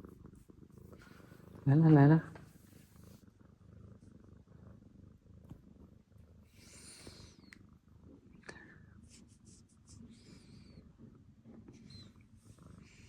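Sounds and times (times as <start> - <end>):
soft rustling: 0.0 - 3.3
cat purring: 0.0 - 13.0.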